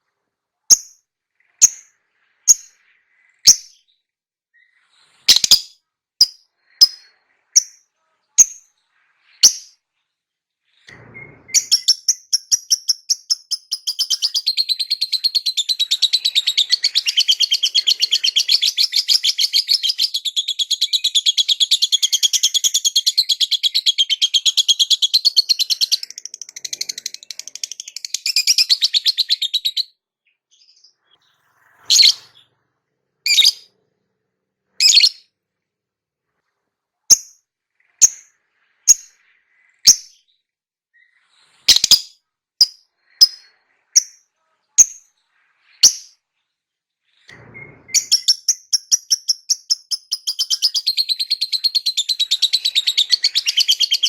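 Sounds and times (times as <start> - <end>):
sharp bird chirps: 0.7 - 32.6, 33.3 - 33.7, 34.8 - 35.4, 37.1 - 46.2, 47.1 - 54.0
bird chattering trill: 11.6 - 29.8, 31.9 - 32.3, 33.3 - 33.7, 34.8 - 35.2.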